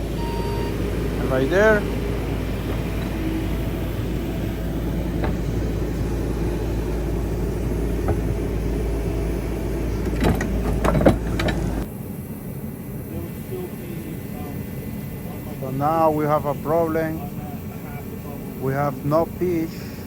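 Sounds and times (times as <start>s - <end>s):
engine running: 0.0s - 20.0s
knocks: 5.1s - 5.5s, 8.0s - 8.4s.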